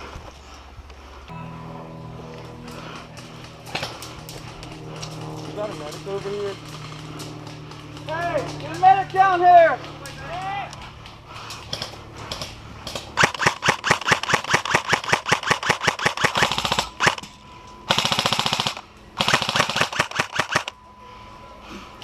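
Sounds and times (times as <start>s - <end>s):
airsoft guns firing in bursts: 11.5s - 17.3s, 17.9s - 20.7s.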